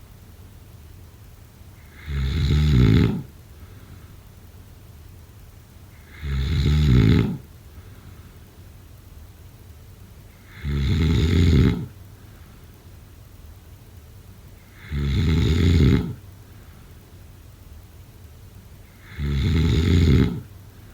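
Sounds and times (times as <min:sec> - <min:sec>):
person snoring: 0:01.9 - 0:03.3, 0:06.0 - 0:07.5, 0:10.4 - 0:12.0, 0:14.7 - 0:16.2, 0:19.0 - 0:20.5.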